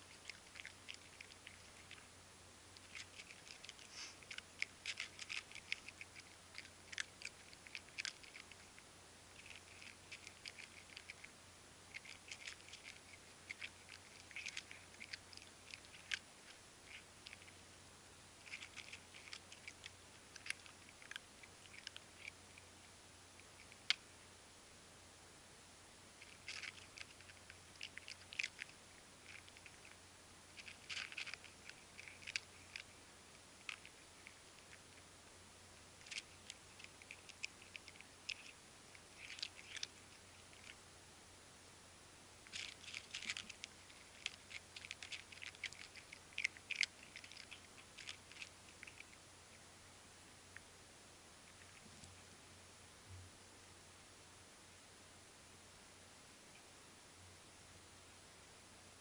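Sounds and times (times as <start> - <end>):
cats chewing food: 0.0 - 24.3, 26.0 - 40.9, 42.4 - 49.7.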